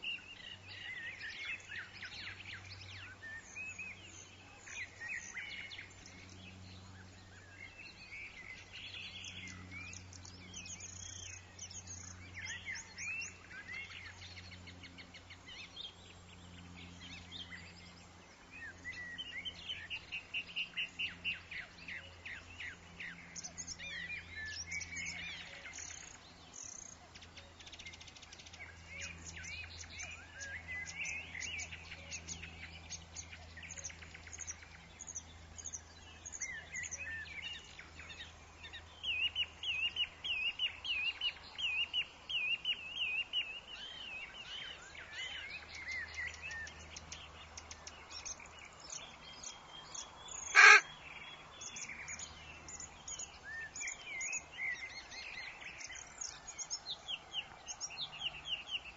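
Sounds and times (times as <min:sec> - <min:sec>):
woodland birds chirping and singing: 0:00.0 - 0:58.9
loud short bird call: 0:50.5 - 0:50.9.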